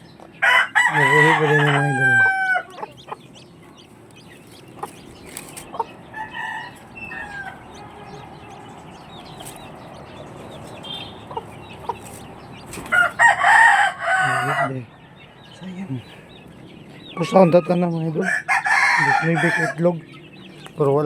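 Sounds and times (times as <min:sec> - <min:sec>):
chickens clucking: 0:00.0 - 0:21.0
loud chicken call: 0:00.4 - 0:03.1, 0:05.8 - 0:08.9, 0:12.8 - 0:14.9, 0:17.2 - 0:19.8.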